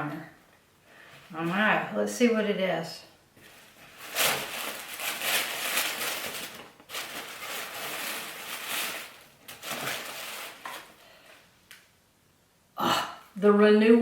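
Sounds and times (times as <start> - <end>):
paper rustling and crinkling: 3.4 - 11.4.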